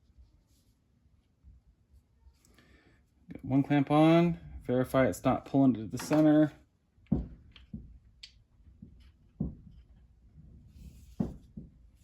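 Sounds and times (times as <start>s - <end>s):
wood knocks: 7.1s - 8.0s, 8.8s - 9.8s, 11.1s - 11.8s.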